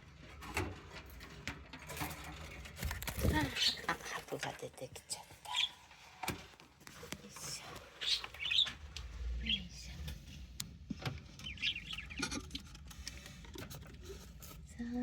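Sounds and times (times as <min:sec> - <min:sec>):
budgerigar chirping: 0:05.5 - 0:05.8, 0:08.0 - 0:08.8, 0:11.4 - 0:12.5.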